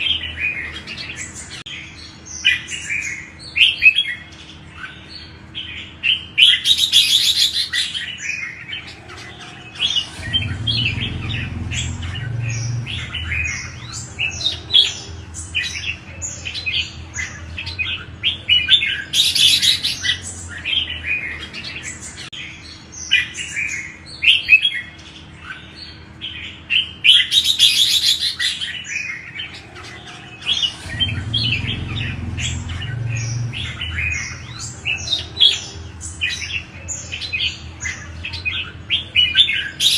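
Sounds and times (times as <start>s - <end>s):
birds chirping: 0.0s - 39.9s
low rumble: 9.8s - 16.1s, 30.5s - 36.5s.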